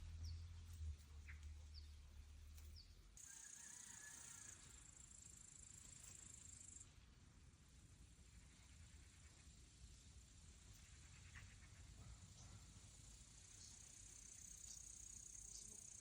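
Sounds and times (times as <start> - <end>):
faint bird chirps: 10.7 - 16.0.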